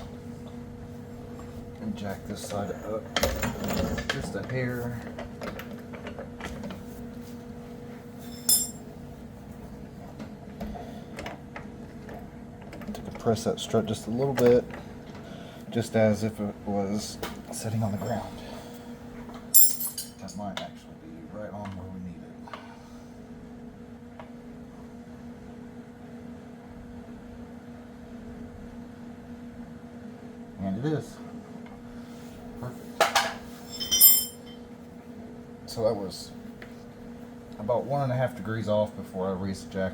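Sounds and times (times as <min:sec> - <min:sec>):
steady low hum: 0:00.0 - 0:12.6, 0:13.2 - 0:25.2, 0:30.6 - 0:39.9
ringing metal clink: 0:08.3 - 0:08.8, 0:19.6 - 0:20.2, 0:33.7 - 0:34.6
metal tools clicking: 0:08.4 - 0:08.8, 0:19.6 - 0:20.2, 0:33.7 - 0:34.5.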